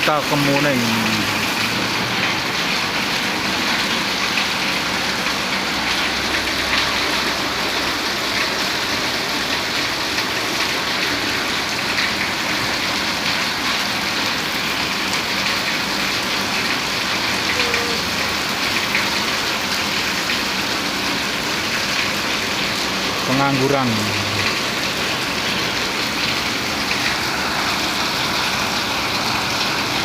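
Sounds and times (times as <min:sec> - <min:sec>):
rain falling: 0:00.0 - 0:30.0.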